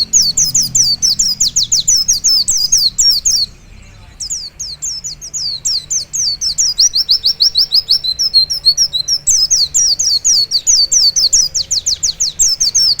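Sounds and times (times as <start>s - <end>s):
bird singing high whistled notes: 0.0s - 13.0s.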